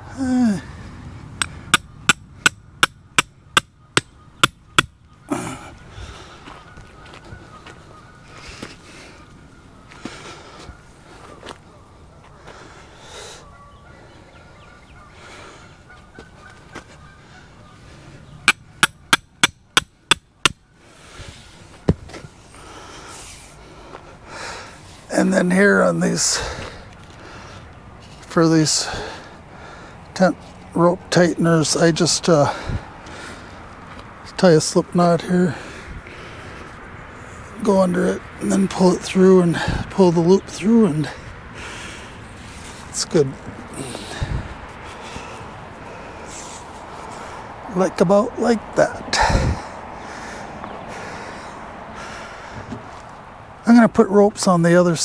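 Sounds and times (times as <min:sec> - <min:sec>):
person grunting: 0:00.0 - 0:00.8, 0:05.3 - 0:05.8
hammer striking tent stake: 0:01.4 - 0:05.0, 0:18.4 - 0:20.6
hammer driving tent stake: 0:18.4 - 0:20.6.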